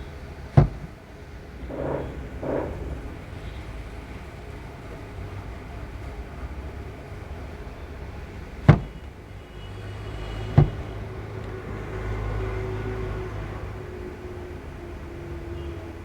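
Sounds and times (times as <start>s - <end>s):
low background rumble: 1.5s - 5.5s.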